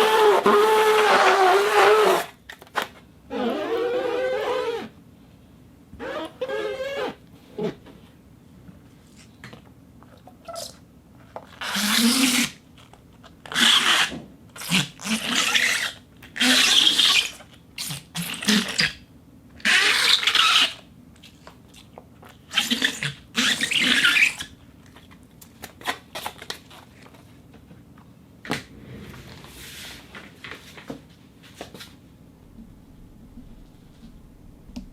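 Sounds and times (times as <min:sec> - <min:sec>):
balloon squeaking on rosin: 0:03.3 - 0:04.9, 0:06.0 - 0:07.2, 0:11.5 - 0:12.6, 0:13.5 - 0:19.0, 0:22.5 - 0:24.5.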